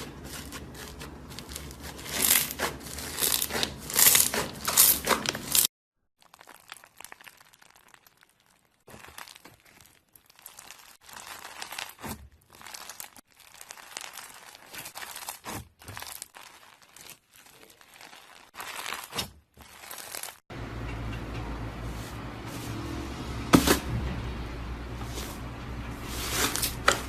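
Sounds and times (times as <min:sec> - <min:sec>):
slime crackling when squeezed: 0:06.2 - 0:20.4.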